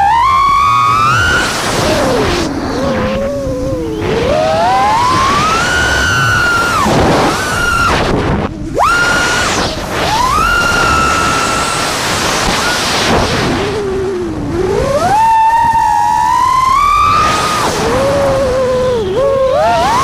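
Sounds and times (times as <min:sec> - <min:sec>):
drone motors whining: 0:00.0 - 0:20.0
rushing noise: 0:00.0 - 0:20.0.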